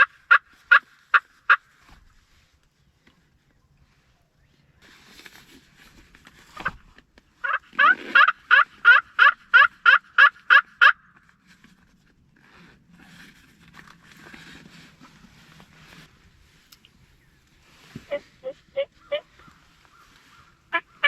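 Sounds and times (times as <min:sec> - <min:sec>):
turkey call hen yelps: 0:00.0 - 0:01.7, 0:07.4 - 0:11.1, 0:18.0 - 0:21.0.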